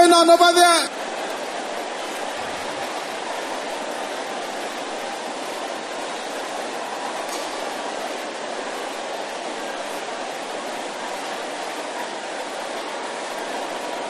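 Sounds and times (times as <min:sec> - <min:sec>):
congregation praying aloud: 0:00.0 - 0:01.0.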